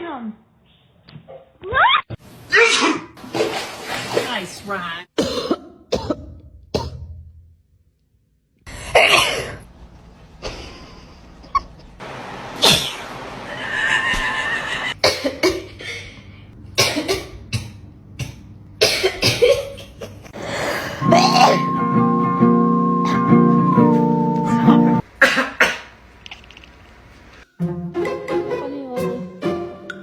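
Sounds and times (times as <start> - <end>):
cat sneezing: 21.0 - 21.7.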